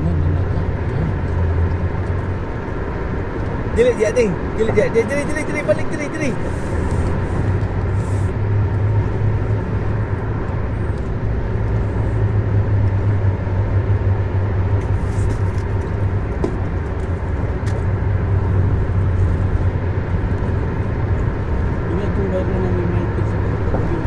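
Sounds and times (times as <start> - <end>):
car engine and tyre drone: 0.0 - 24.0.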